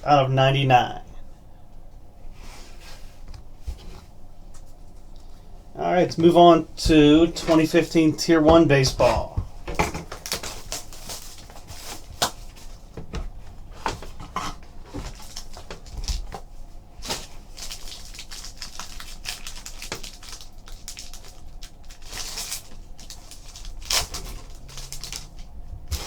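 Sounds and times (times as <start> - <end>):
card packaging clicks and rustles: 6.1 - 26.0.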